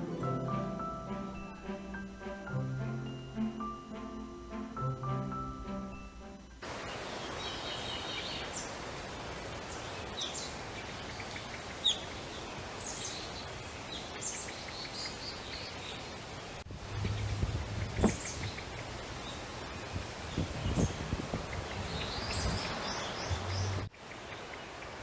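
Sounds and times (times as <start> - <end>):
outdoor hiss: 0.0 - 25.0
small birds chirping: 6.6 - 25.0
low bumps: 16.7 - 23.9.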